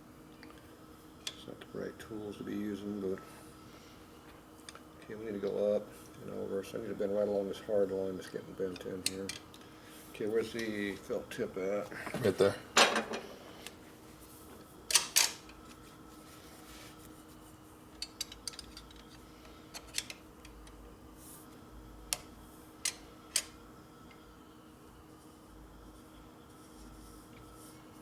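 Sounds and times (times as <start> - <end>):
faint steady hum: 0.0 - 28.0
hand tools set down: 12.0 - 13.3
small metal parts clicking: 18.0 - 20.8.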